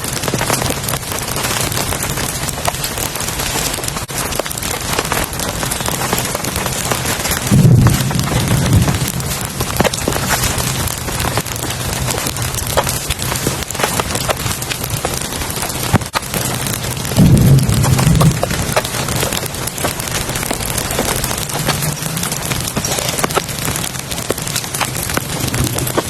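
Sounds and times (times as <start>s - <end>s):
heavy rain: 0.0s - 26.0s
low rumble: 7.4s - 13.4s.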